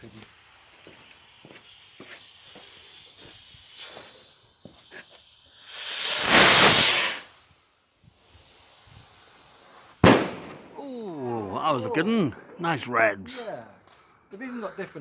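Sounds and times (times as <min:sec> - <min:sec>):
firework crackling and sputtering: 0:00.0 - 0:07.4
firework rushing hiss: 0:00.0 - 0:07.5, 0:08.1 - 0:10.7.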